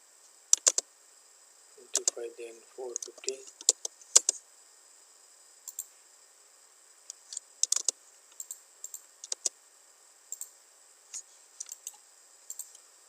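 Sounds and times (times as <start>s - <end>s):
mouse and keyboard clicking: 0.6s - 0.8s, 1.9s - 2.2s, 2.9s - 4.4s, 7.3s - 9.5s, 11.6s - 12.8s.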